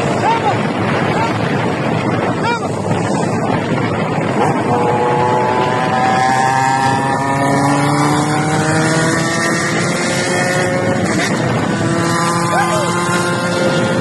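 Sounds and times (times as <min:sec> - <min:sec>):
engine running: 0:00.0 - 0:14.0
wind noise on microphone: 0:00.0 - 0:14.0.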